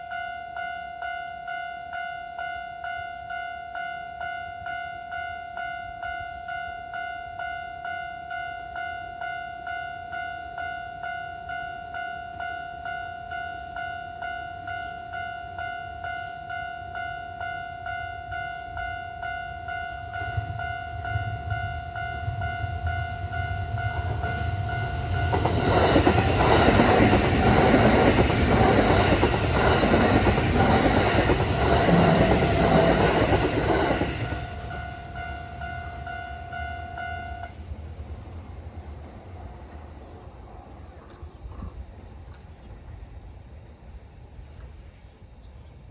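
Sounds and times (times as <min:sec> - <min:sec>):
level-crossing bell ringing: 0:00.0 - 0:37.6
electric train passing: 0:00.0 - 0:45.4
wheel and rail noise: 0:14.5 - 0:45.8.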